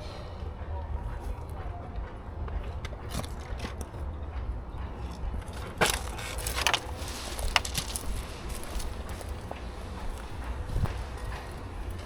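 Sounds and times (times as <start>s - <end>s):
steady low rumble: 0.0s - 12.0s
crunching clicks: 5.1s - 12.0s.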